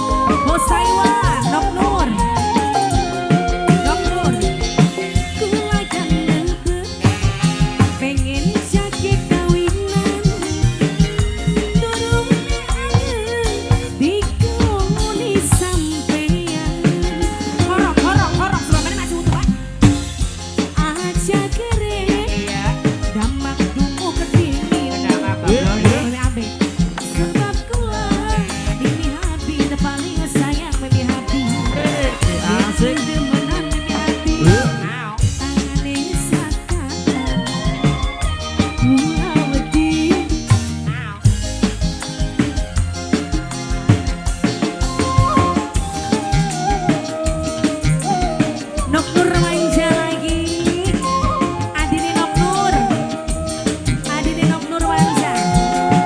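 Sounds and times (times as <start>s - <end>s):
melody sung or played: 0.0s - 41.2s, 44.6s - 56.0s
live band music with singer: 0.0s - 56.0s
regular drum beat: 0.0s - 56.0s.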